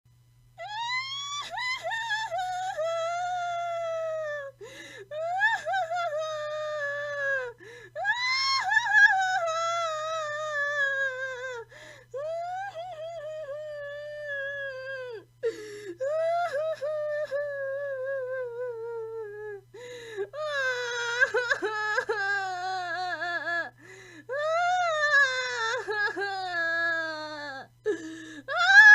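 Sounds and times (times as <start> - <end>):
faint low hum: 0.1 - 28.9
cartoon voice wailing and sobbing: 0.7 - 4.5, 20.4 - 23.7, 24.4 - 27.7
gasping breath: 4.6 - 5.1, 19.8 - 20.3, 23.8 - 24.3, 27.9 - 28.5.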